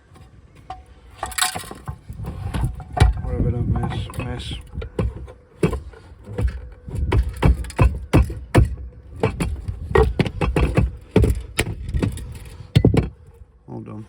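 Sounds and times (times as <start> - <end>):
hammer knocking on metal housing: 2.6 - 12.1.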